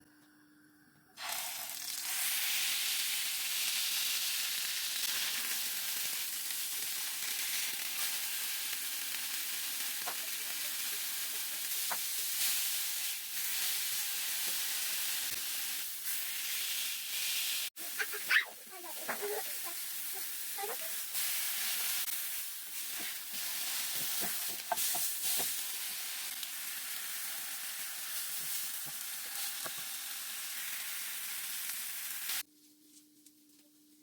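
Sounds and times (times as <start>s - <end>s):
burger patty sizzling on grill: 1.2s - 32.5s.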